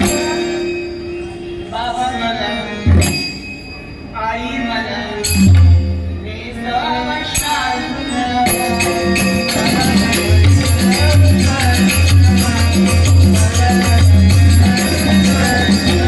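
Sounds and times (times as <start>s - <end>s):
small percussion clashing: 2.9s - 3.8s, 5.2s - 6.0s, 8.4s - 16.0s.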